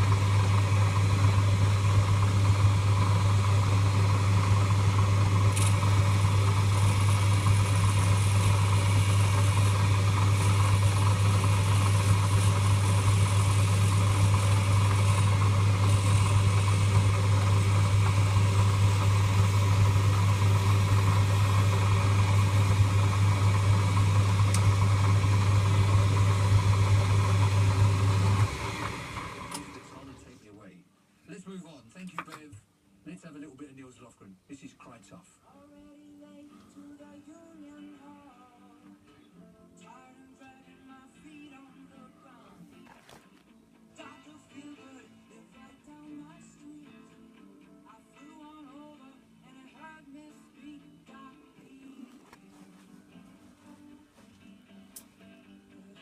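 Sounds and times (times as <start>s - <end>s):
lathe motor humming: 0.0s - 30.4s.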